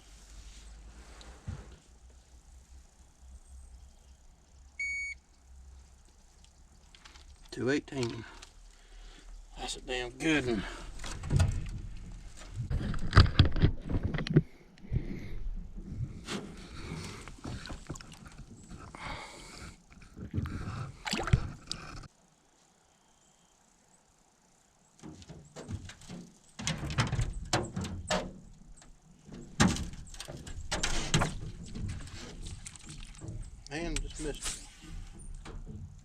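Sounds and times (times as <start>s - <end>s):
gear knocking and rattling in boat: 25.1s - 36.0s.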